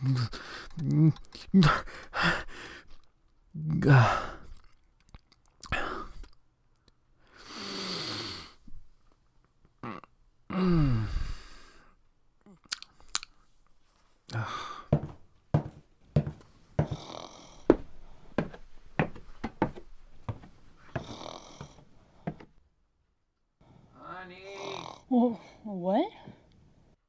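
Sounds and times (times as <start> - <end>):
snore: 7.4 - 8.6, 23.6 - 25.2.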